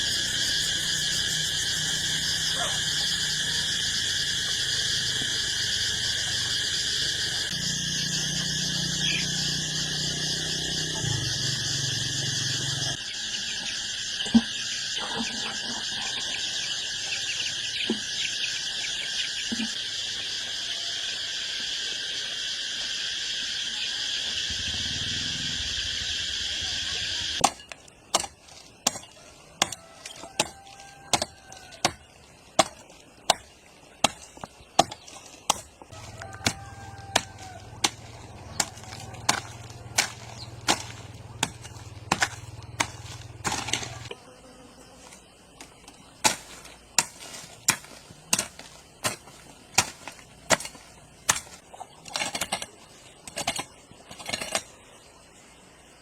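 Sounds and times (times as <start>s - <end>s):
chopping wood: 27.4s - 32.0s, 32.6s - 44.1s, 45.6s - 52.7s.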